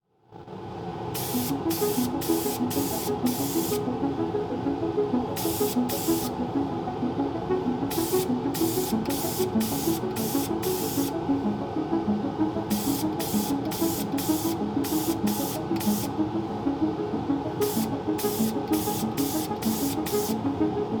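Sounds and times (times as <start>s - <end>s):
hissing shaker-like beat: 1.2s - 4.0s, 5.0s - 6.4s, 7.5s - 11.3s, 12.5s - 16.8s, 17.4s - 20.9s
melody of short stepped notes: 1.3s - 21.0s.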